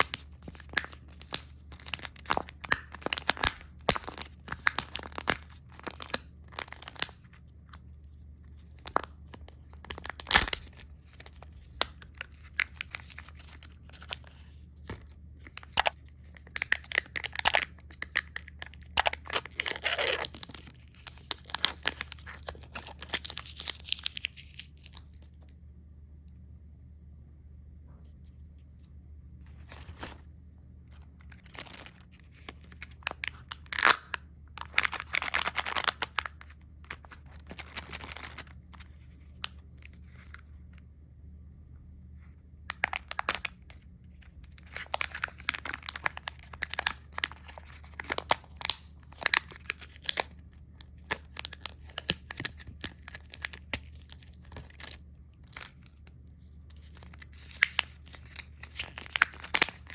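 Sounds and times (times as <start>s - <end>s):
plastic wrappers crinkling: 0.0s - 25.4s, 31.1s - 40.4s, 42.7s - 59.9s
faint low hum: 0.0s - 59.9s.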